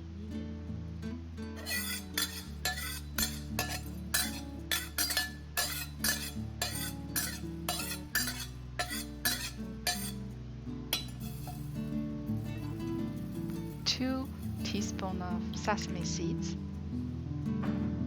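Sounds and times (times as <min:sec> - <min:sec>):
background music: 0:01.3 - 0:18.0
spatula scraping dry pan: 0:01.6 - 0:10.2, 0:11.0 - 0:11.8, 0:12.4 - 0:15.0.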